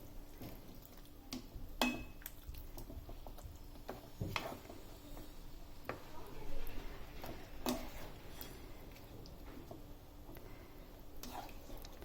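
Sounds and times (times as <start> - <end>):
spoon scraping a pan: 3.8 - 6.1, 6.9 - 9.0, 11.2 - 12.0.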